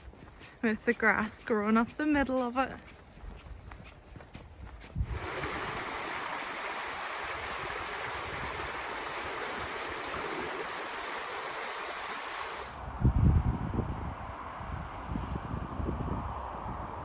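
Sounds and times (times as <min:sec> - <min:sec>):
stream water rushing: 0:05.0 - 0:12.8.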